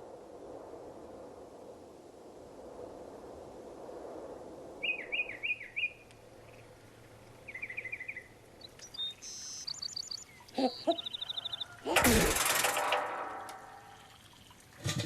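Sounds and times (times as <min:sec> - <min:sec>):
faint outdoor ambience: 0:00.0 - 0:15.0
bird trill: 0:04.8 - 0:06.7, 0:07.4 - 0:14.6
bird chirps: 0:04.8 - 0:12.0.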